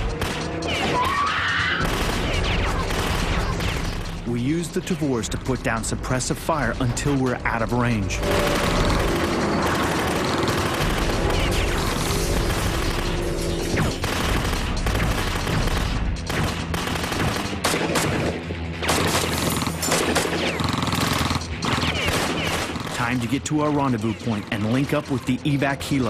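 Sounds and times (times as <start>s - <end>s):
dramatic background music: 0.0s - 26.0s
rifles firing automatic bursts: 1.8s - 4.2s, 8.2s - 23.4s.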